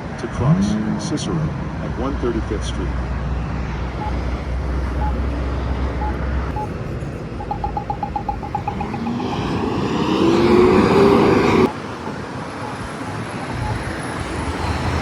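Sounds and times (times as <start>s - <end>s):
steady traffic noise: 0.0s - 15.0s
crosswalk button ticking: 4.0s - 10.1s, 11.6s - 15.0s
vehicle accelerating past: 8.8s - 11.7s.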